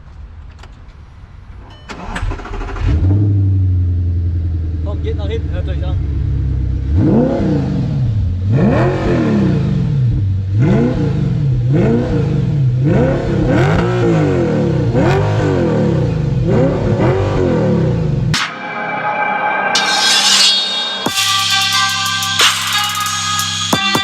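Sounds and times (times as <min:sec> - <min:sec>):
car engine revving: 0:00.0 - 0:18.5.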